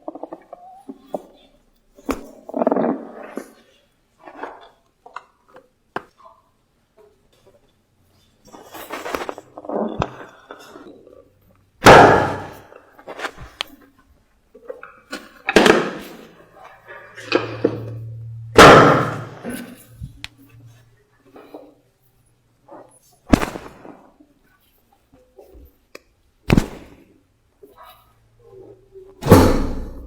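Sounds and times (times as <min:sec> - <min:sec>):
loud sharp cracks: 0:11.8 - 0:12.7, 0:18.6 - 0:19.6, 0:29.2 - 0:30.0
smaller knocks: 0:29.2 - 0:30.0.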